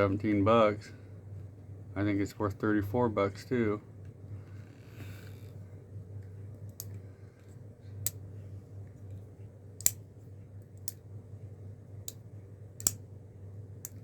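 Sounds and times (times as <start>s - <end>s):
low steady hum: 0.0s - 14.0s
folding knife clicking open and shut: 12.8s - 13.0s.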